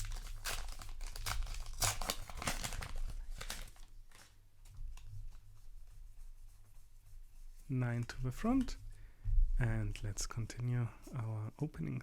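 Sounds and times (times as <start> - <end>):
paper wrapper tearing and crinkling: 0.0 - 4.4.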